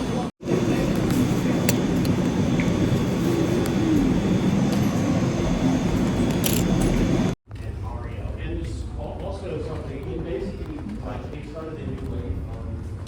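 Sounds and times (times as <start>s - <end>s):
loud roaring rumble from speakers: 0.0s - 7.4s.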